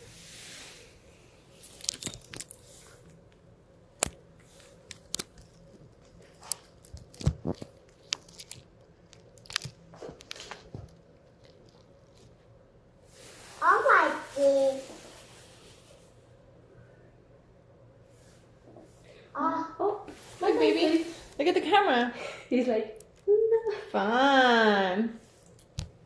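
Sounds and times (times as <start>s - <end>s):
small things clicking and tapping: 1.8s - 12.4s.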